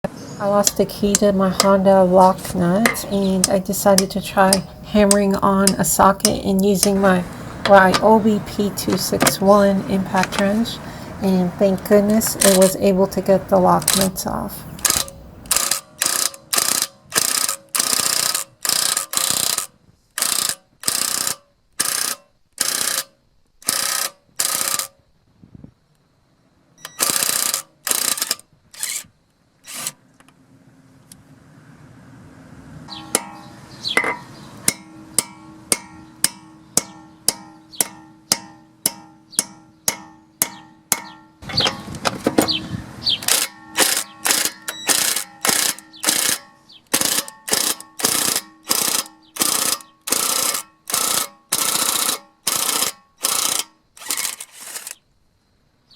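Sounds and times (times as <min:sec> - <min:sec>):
impact wrench hammering: 0:00.6 - 0:01.8, 0:02.7 - 0:09.5, 0:32.9 - 0:42.5, 0:43.2 - 0:54.9
regular clicking: 0:14.7 - 0:25.0, 0:43.2 - 0:55.0.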